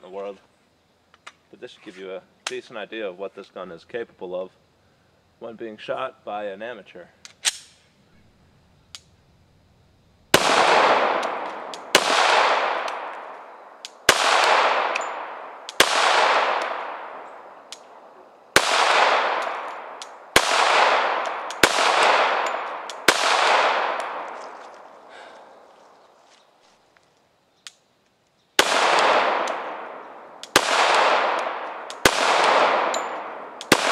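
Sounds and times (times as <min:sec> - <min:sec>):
pistol shots with echo: 0:10.4 - 0:24.4, 0:28.6 - 0:33.9.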